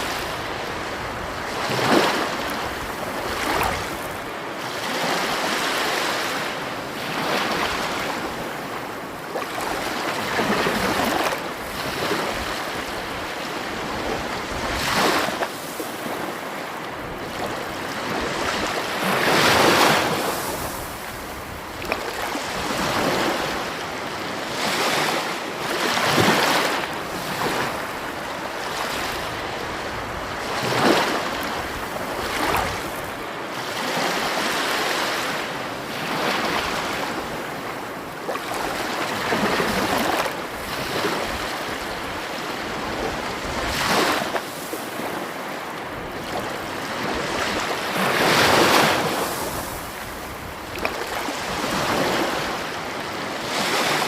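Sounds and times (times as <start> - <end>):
sea waves breaking on shore: 0.0 - 54.0.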